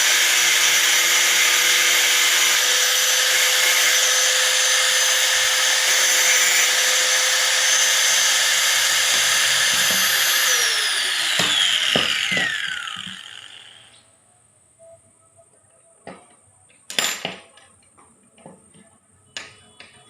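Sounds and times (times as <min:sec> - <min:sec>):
angle grinder whining: 0:00.0 - 0:14.0.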